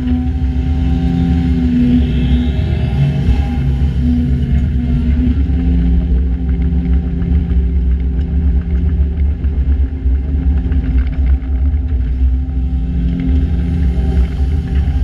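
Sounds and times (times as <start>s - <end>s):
diesel engines running: 0.0s - 15.0s
light clatter: 5.8s - 15.0s.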